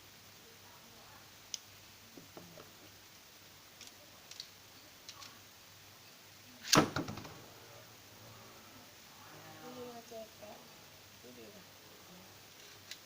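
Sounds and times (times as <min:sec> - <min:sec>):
plastic toy parts clicking: 0:03.8 - 0:04.5, 0:05.1 - 0:05.4.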